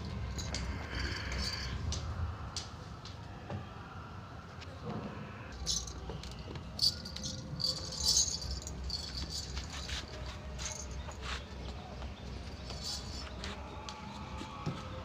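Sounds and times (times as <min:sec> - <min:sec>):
metallic jingling and rattling: 0:00.0 - 0:01.8, 0:05.6 - 0:11.3, 0:12.5 - 0:13.4.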